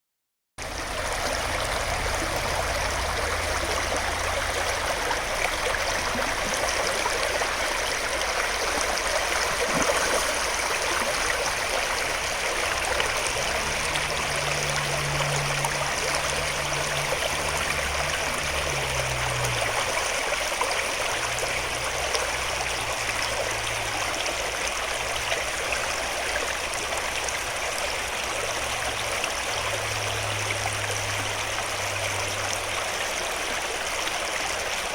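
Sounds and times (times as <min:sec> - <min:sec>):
low hum: 0:00.6 - 0:20.4
stream water rushing: 0:00.6 - 0:34.9.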